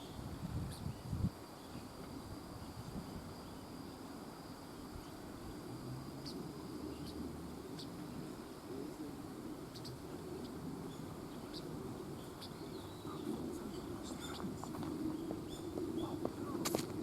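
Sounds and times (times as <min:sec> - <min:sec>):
small birds chirping: 0:00.0 - 0:02.0, 0:06.1 - 0:17.0
insect trilling: 0:01.6 - 0:17.0
low steady rushing: 0:02.2 - 0:17.0.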